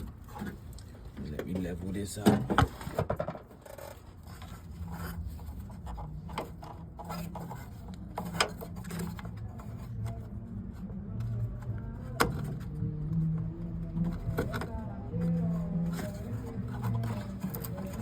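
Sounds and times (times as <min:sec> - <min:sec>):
faint low hum: 0:03.7 - 0:18.0.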